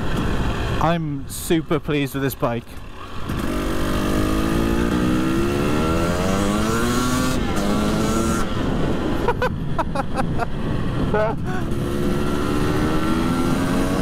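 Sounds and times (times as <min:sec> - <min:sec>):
motorcycle engine accelerating: 0:02.8 - 0:09.4, 0:10.6 - 0:14.0.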